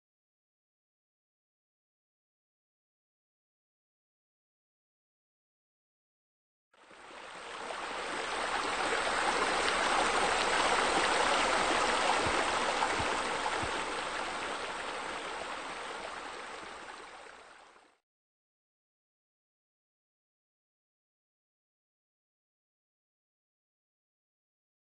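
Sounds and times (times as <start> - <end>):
waterfall rushing: 7.5 - 17.2.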